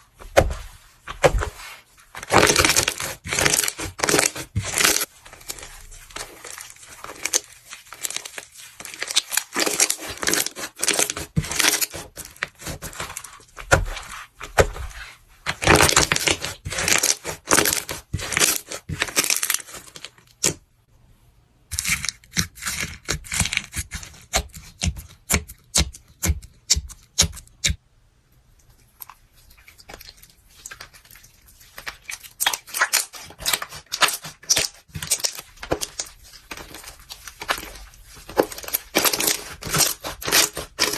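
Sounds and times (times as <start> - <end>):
crunchy slime crackling: 2.1 - 14.7, 15.5 - 20.6, 29.8 - 40.9.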